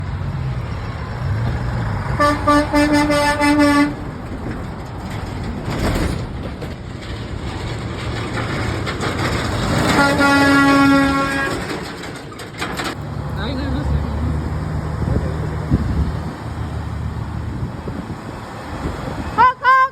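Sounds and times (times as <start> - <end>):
road traffic rumble: 0.0 - 19.9
truck horn honking: 2.0 - 4.1, 9.8 - 11.8, 19.3 - 19.9.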